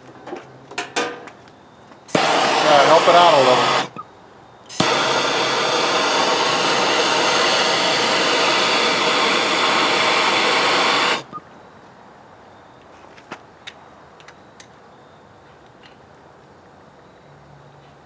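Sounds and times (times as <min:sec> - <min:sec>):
power tool running: 0:02.1 - 0:04.0, 0:04.7 - 0:11.4.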